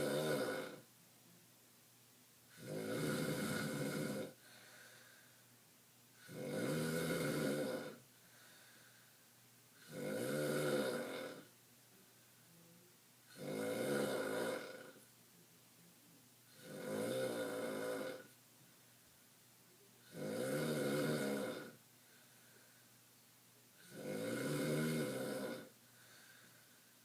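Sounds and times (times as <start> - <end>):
person snoring: 0.0 - 0.9, 2.5 - 5.1, 6.2 - 8.8, 9.8 - 11.5, 13.3 - 15.0, 16.5 - 18.4, 20.0 - 21.8, 23.8 - 26.6.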